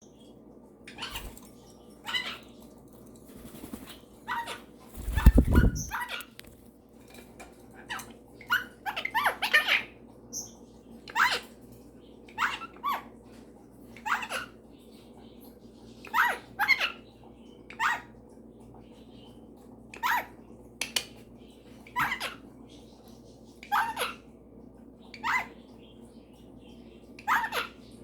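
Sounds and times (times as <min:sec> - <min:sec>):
parrots chirping: 0:03.7 - 0:06.5.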